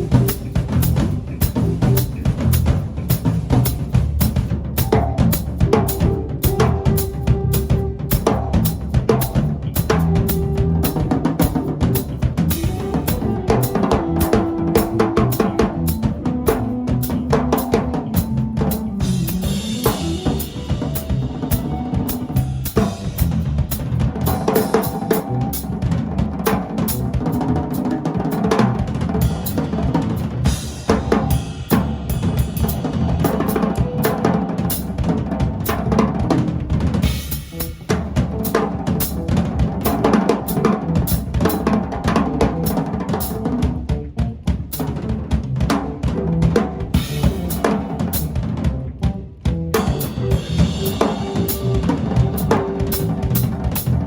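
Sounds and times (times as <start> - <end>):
drum kit hits: 0.0 - 54.0
live band playing: 0.0 - 54.0.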